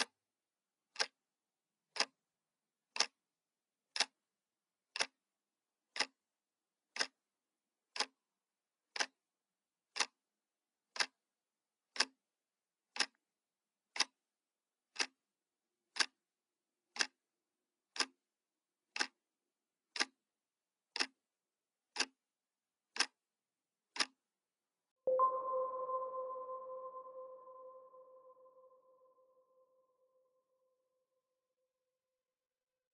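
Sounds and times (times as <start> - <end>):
clock ticking: 0.9 - 1.2, 1.9 - 2.2, 2.9 - 3.2, 3.9 - 4.2, 4.9 - 5.2, 5.9 - 6.3, 6.9 - 7.3, 7.9 - 8.2, 8.9 - 9.3, 9.9 - 10.2, 10.9 - 11.3, 11.9 - 12.3, 12.9 - 13.2, 13.9 - 14.3, 14.9 - 15.2, 15.9 - 16.2, 16.9 - 17.3, 17.9 - 18.3, 18.9 - 19.2, 19.9 - 24.2.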